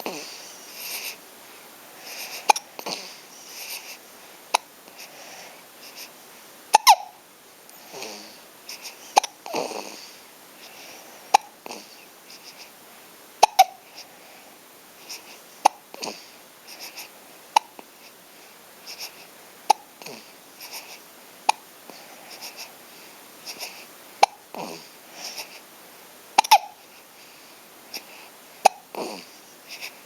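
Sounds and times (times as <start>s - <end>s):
baby breathing softly: 0.0s - 12.8s, 13.4s - 25.7s, 26.4s - 30.0s
baby hiccuping: 2.4s - 3.0s, 6.7s - 7.2s, 9.1s - 9.8s, 11.3s - 11.8s, 13.4s - 13.8s, 15.6s - 16.1s, 19.7s - 20.8s, 23.5s - 24.8s, 26.4s - 26.8s, 28.6s - 29.2s.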